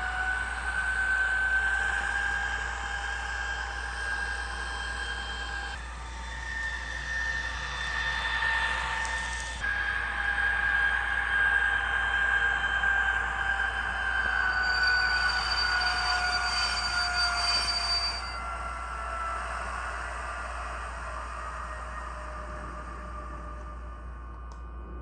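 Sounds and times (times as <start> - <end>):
high steady squeal: 0.0 - 25.0.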